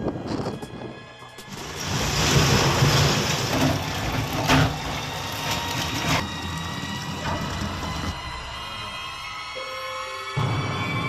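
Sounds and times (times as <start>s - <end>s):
road noise: 1.4s - 9.5s.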